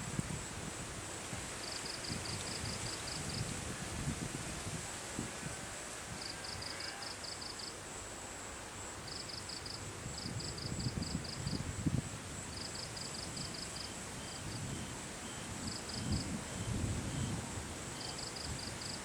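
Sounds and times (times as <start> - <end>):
wind buffeting microphone: 0.0 - 6.6, 10.0 - 12.7, 14.3 - 19.0
high insect whine: 0.0 - 19.0
insects chirping in rapid pulses: 6.2 - 19.0.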